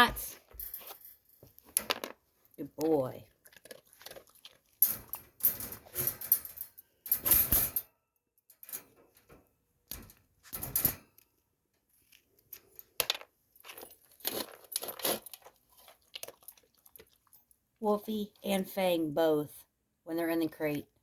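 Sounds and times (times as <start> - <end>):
metallic rattling and clinking: 3.6 - 7.9, 8.5 - 11.2.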